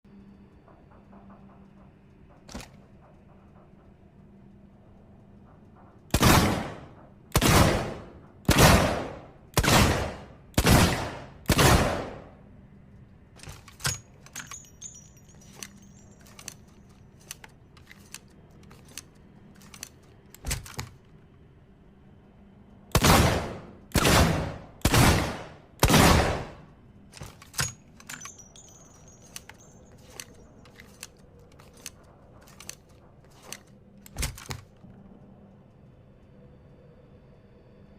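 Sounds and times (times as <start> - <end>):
small metallic clicks and clinks: 13.0 - 21.2, 27.1 - 34.8.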